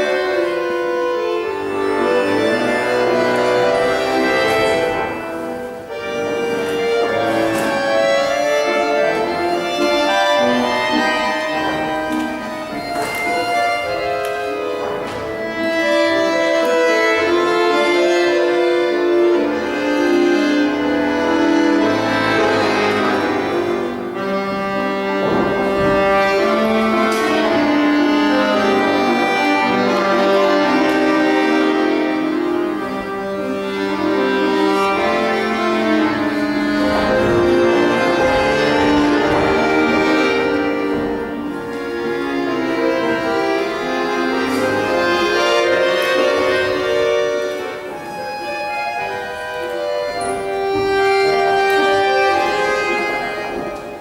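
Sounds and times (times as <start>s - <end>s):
accordion dance melody: 0.0s - 54.0s
faint knocks: 24.2s - 28.8s.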